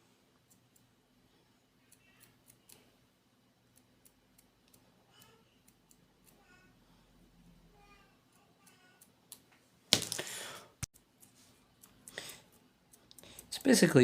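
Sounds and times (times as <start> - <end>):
faint room hum: 0.0 - 14.0
small clicks and ticks: 10.9 - 13.9.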